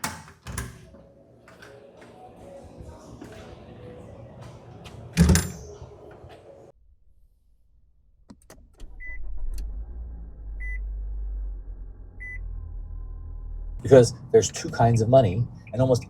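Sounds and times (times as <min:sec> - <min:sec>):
car engine starting and running: 0:08.2 - 0:16.0.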